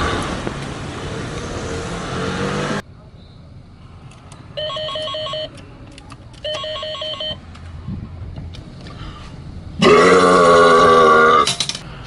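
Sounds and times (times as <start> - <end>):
telephone ringing: 4.6 - 5.5, 6.4 - 7.4
loud burp: 9.8 - 11.6.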